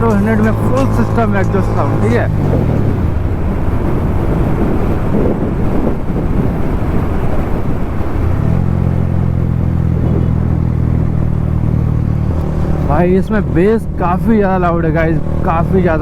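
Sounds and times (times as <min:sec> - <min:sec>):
motorcycle engine with deep exhaust: 0:00.0 - 0:16.0.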